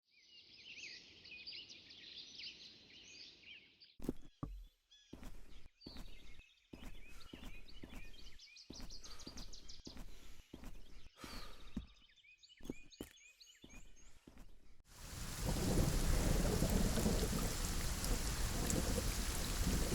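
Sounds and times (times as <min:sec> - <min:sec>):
birds chirping and singing: 0:05.0 - 0:14.1.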